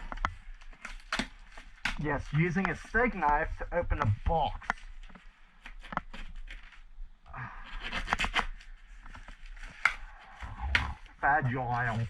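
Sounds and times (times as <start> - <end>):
knife cutting cardboard and tape: 7.6 - 10.0.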